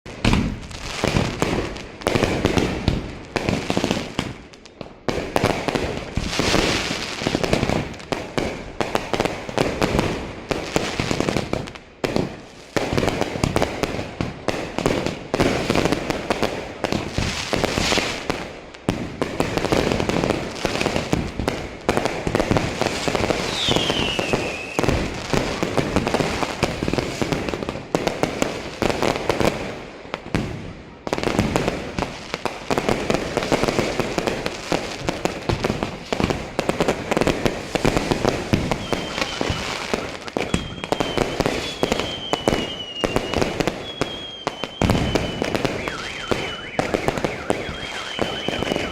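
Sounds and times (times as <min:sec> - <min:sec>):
fireworks bangs and crackling: 0:00.0 - 0:48.9
falling whistle: 0:23.5 - 0:24.8, 0:38.7 - 0:48.9.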